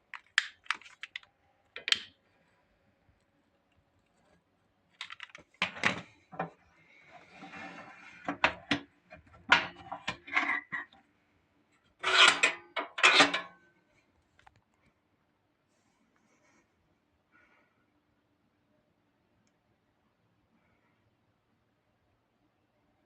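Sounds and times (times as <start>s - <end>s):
scraping: 7.1s - 11.0s, 12.0s - 13.5s.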